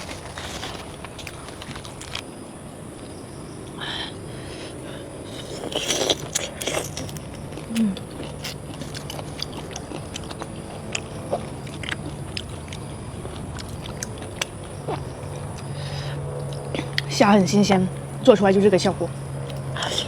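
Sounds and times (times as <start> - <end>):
person chewing food: 0.0 - 2.2, 5.0 - 17.1.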